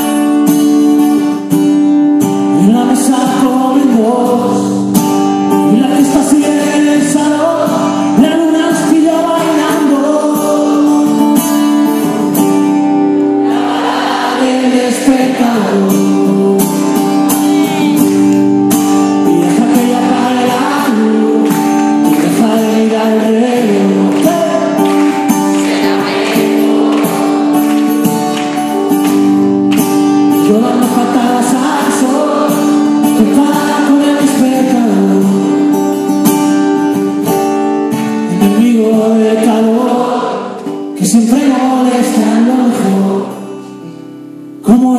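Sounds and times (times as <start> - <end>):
live rock band playing: 15.8 - 34.1.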